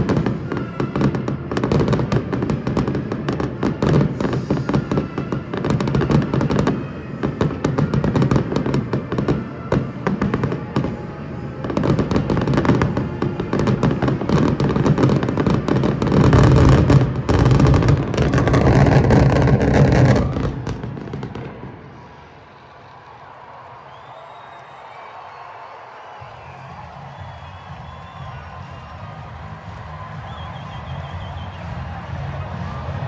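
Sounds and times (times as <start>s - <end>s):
fireworks bangs and crackles: 0.0s - 33.0s
music playing: 26.2s - 33.0s.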